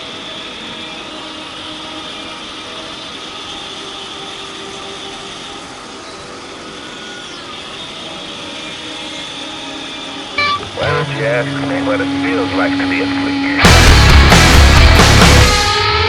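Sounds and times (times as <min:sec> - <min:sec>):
motorcycle engine running: 0:13.6 - 0:16.0.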